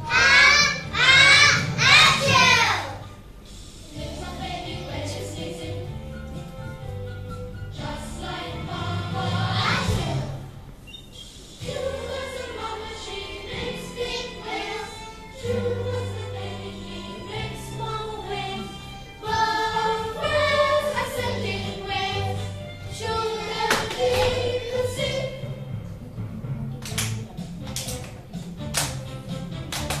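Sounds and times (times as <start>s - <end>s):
children singing together: 0.0s - 3.1s, 3.9s - 6.1s, 7.7s - 10.5s, 11.6s - 25.6s.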